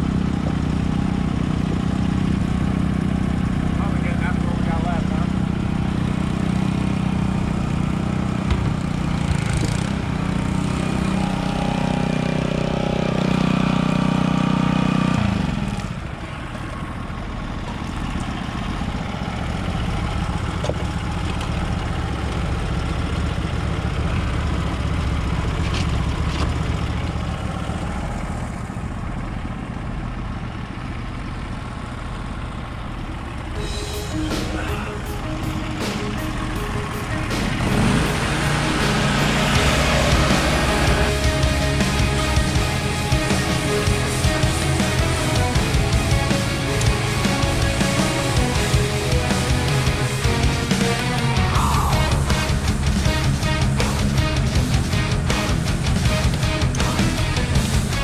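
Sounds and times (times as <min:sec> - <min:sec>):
pressure washer engine running: 0:37.3 - 0:58.0.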